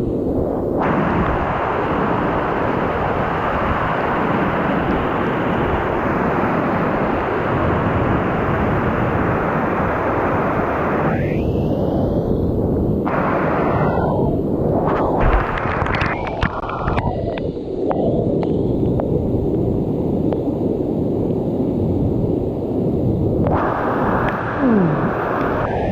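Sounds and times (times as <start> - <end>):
wind rumble on microphone: 0.0 - 25.9.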